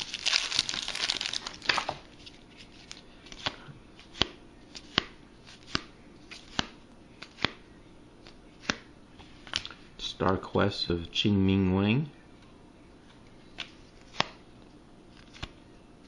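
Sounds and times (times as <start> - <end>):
foil wrapper crinkling and tearing: 0.0 - 3.0
cards flicked with sharp snaps: 4.2 - 7.6, 13.6 - 14.4.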